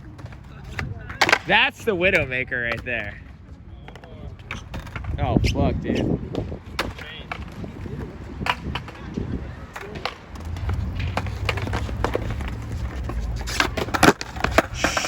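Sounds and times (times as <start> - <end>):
skateboard clacks and impacts: 0.0 - 1.6, 6.2 - 15.0
skateboard wheels rolling: 0.0 - 15.0.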